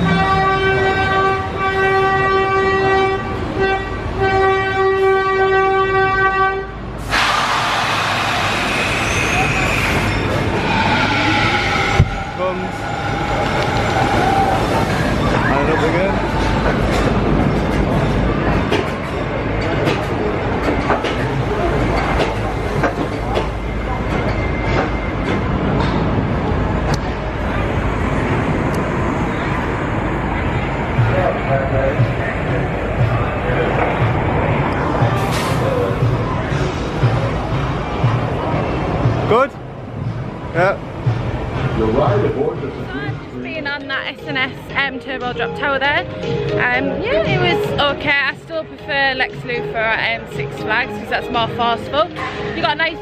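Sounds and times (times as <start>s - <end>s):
horn blasts: 0.0s - 16.9s
ride machinery rumbling: 6.8s - 53.0s
loud rush of hissing: 7.0s - 15.4s.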